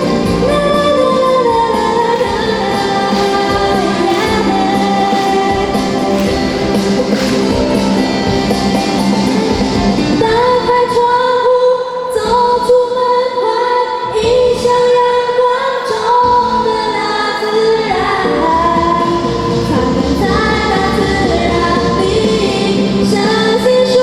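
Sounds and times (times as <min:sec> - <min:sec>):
women singing long held notes: 0:00.0 - 0:09.3
pop backing track: 0:00.0 - 0:24.0.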